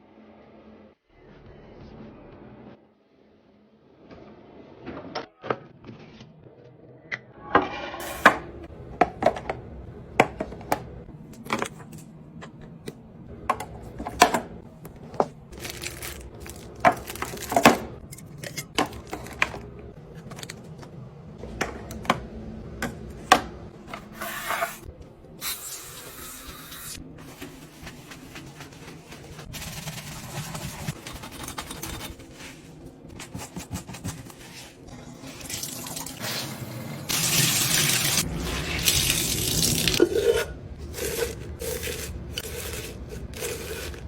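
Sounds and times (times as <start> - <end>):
containers clinking on shelves: 13.4 - 24.8.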